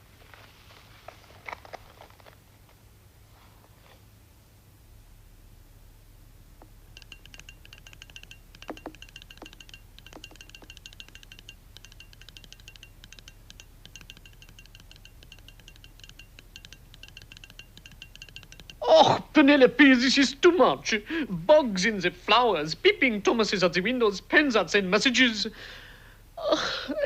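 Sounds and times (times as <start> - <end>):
rapid high clicking and ticking: 6.6 - 19.0.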